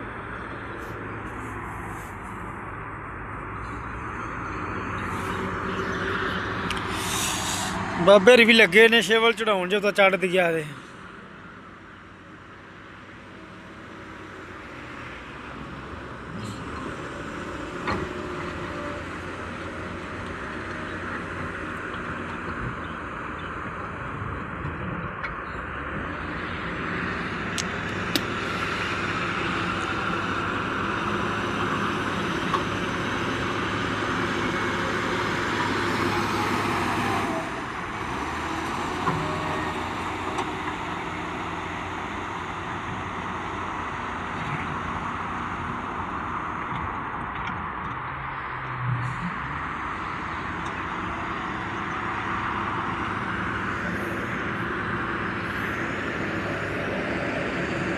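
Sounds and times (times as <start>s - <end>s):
heavy machine engine running: 49.0s - 57.9s.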